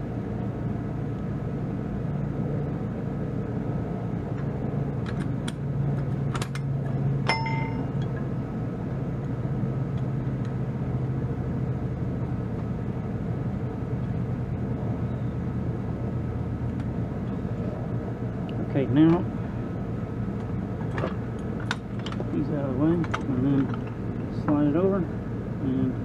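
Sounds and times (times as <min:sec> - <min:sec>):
metal hitch parts knocking: 0:05.0 - 0:08.3, 0:20.8 - 0:24.7
ringing metal clang: 0:07.2 - 0:08.2.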